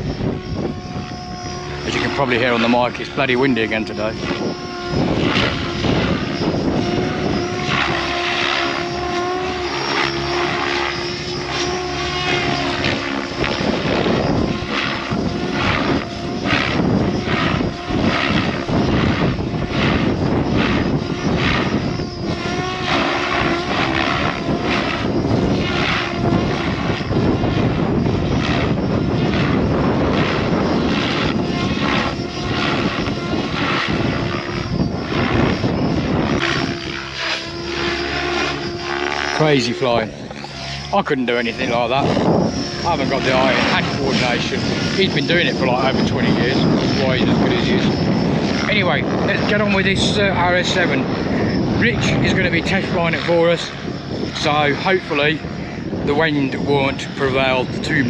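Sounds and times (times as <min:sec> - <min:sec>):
rotor blades chopping: 0:00.0 - 0:55.1
rc helicopter motor whine: 0:00.0 - 0:58.0
wind buffeting microphone: 0:00.0 - 0:58.0.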